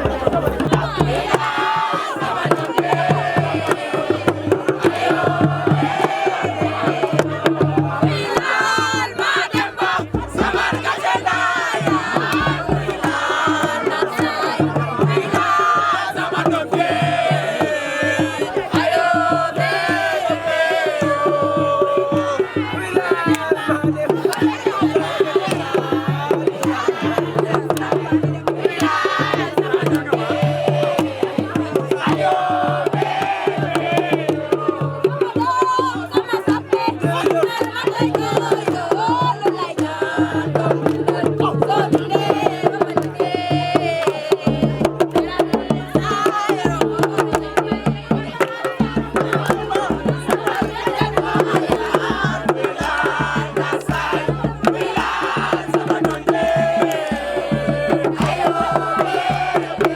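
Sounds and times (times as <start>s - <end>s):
hand drum percussion: 0.0s - 59.9s.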